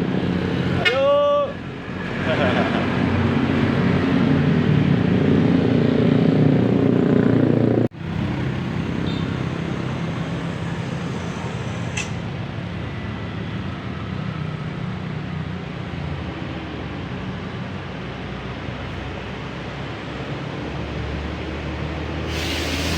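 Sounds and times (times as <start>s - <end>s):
bus engine rumbling: 0.0s - 22.9s
road traffic noise: 0.0s - 22.9s.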